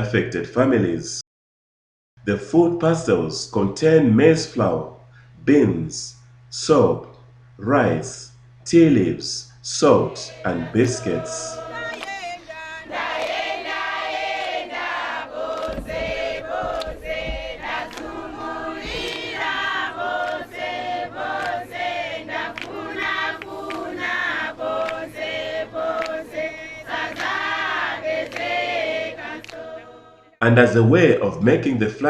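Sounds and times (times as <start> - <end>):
choir singing: 9.7 - 30.4
low rumble: 15.6 - 19.9.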